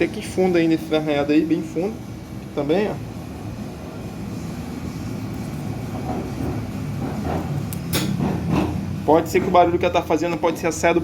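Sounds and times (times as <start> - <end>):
sharp click: 7.7 - 8.2.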